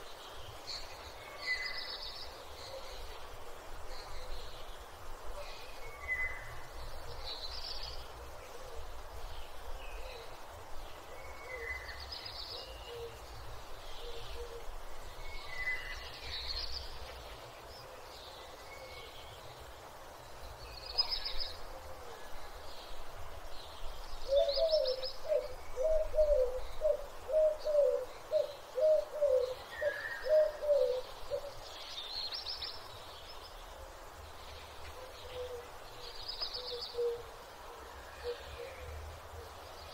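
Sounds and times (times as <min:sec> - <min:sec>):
small birds chirping: 0:00.0 - 0:39.9
bird low calls: 0:11.0 - 0:19.4, 0:23.8 - 0:32.8, 0:34.5 - 0:39.9.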